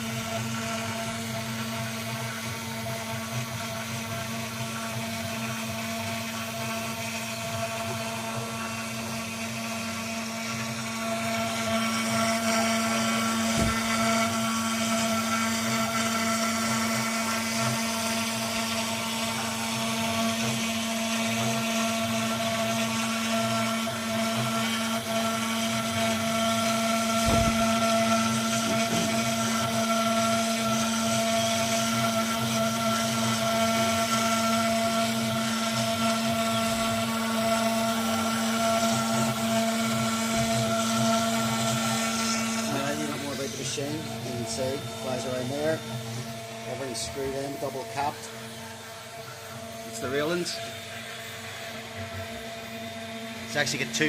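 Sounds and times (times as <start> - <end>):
router spindle whining: 0.0 - 54.0
cutting noise: 25.7 - 30.8.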